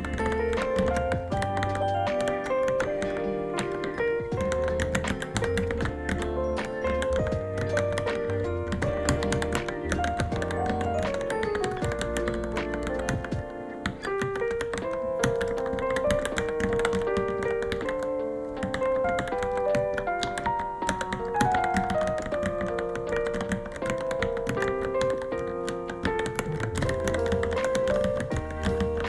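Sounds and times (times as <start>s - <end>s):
melodic background music: 0.0s - 29.0s
rapid keyboard typing clicks: 0.0s - 29.0s.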